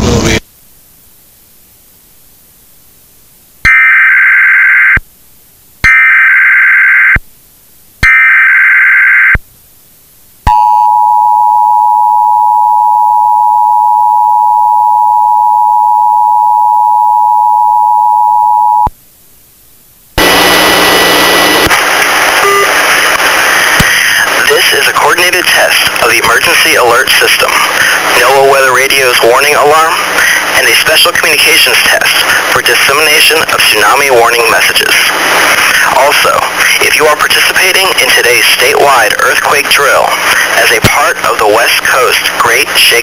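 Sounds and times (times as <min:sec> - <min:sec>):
loud static noise: 0:00.0 - 0:03.7, 0:09.2 - 0:10.6, 0:12.4 - 0:43.0
two-tone attention signal: 0:10.5 - 0:18.9.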